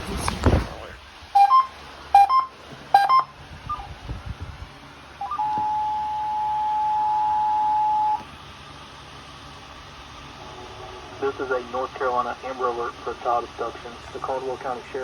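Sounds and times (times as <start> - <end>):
short electronic beeps: 1.4 - 3.3
emergency alert attention tone: 1.4 - 3.9, 5.2 - 8.2.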